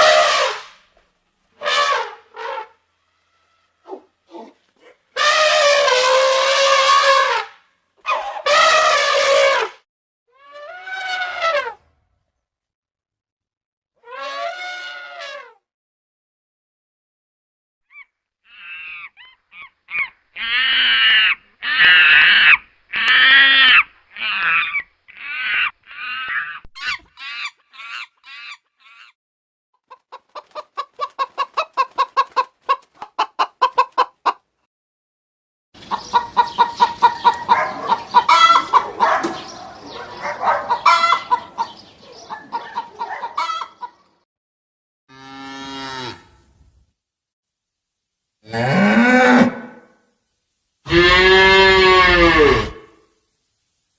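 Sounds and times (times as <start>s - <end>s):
chickens squawking: 0.0s - 0.7s, 1.6s - 9.7s, 17.9s - 29.2s, 29.8s - 34.4s, 35.8s - 44.1s
chickens clucking and cackling: 8.1s - 9.6s, 18.0s - 29.2s, 29.8s - 34.5s, 35.8s - 44.2s.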